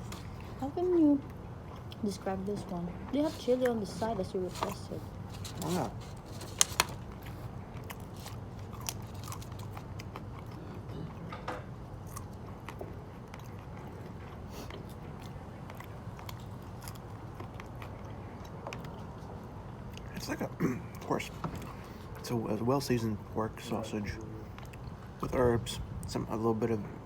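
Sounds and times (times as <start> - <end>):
person chewing food: 0.0 - 0.6, 4.6 - 11.3, 11.9 - 20.1
low background hum: 0.0 - 27.0.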